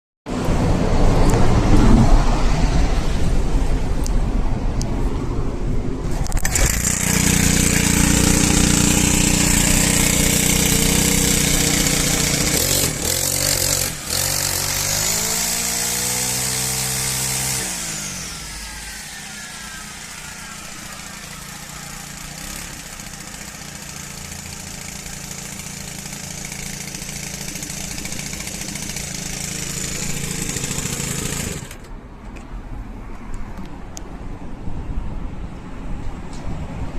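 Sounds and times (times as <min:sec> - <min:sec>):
brush cutter engine running: 0:06.2 - 0:31.9.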